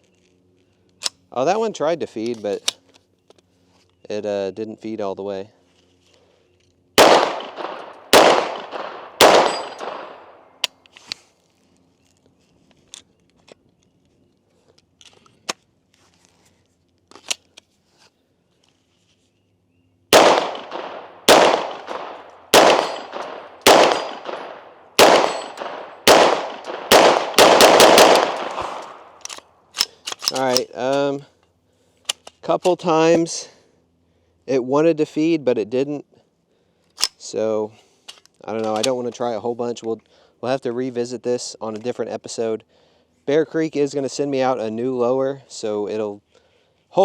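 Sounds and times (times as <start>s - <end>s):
rifle gunshots: 7.0s - 10.4s, 20.1s - 29.2s.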